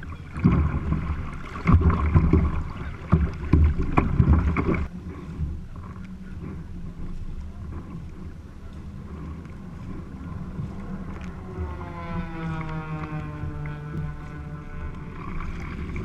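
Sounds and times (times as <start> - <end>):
boat engine rumble: 0.0 - 16.0
wind on microphone: 0.0 - 16.0
pitched engine tone dropping: 11.4 - 15.4.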